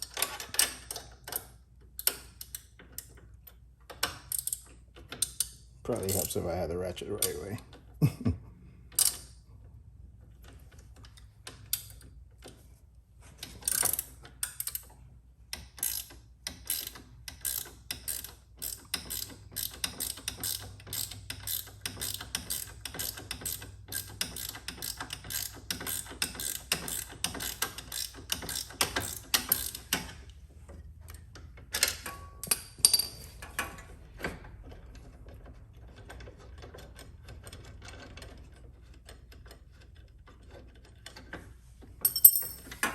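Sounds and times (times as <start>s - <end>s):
socket ratchet clicking: 15.5s - 30.3s.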